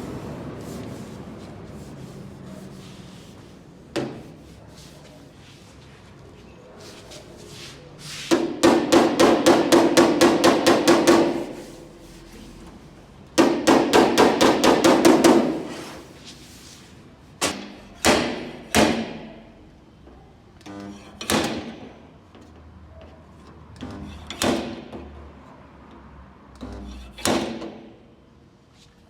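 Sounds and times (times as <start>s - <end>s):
hammer striking sheet metal: 8.3s - 11.8s, 13.4s - 16.0s, 17.4s - 19.4s.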